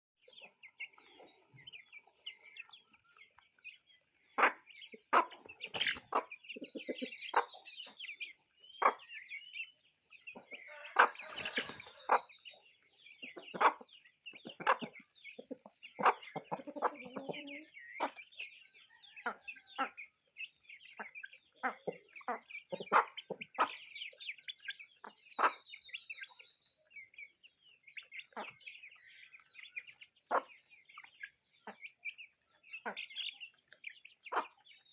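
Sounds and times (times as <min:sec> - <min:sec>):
chickens clucking: 0:00.2 - 0:34.9
chicken squawk: 0:10.4 - 0:12.3, 0:25.4 - 0:25.6.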